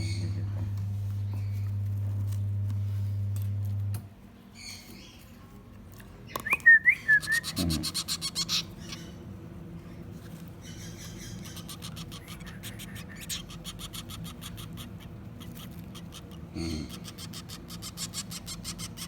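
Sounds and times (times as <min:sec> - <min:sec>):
low hum: 0:00.0 - 0:04.1
chicks chirping: 0:07.1 - 0:09.2, 0:10.6 - 0:19.0.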